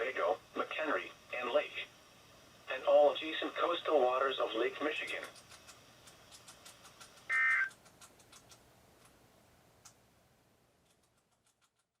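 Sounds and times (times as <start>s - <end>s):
faint hiss: 0.0s - 7.7s
high digital data tones: 7.3s - 7.8s.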